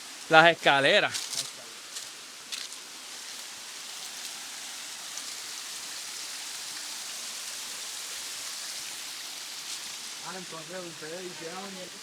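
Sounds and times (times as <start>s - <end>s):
water rushing over rocks: 3.4s - 12.0s.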